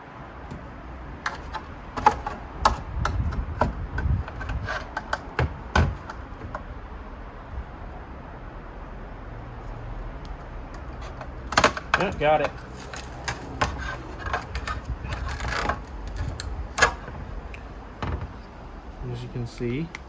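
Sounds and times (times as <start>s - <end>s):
clicks knocks and scraping: 0.4s - 6.8s, 10.3s - 18.6s.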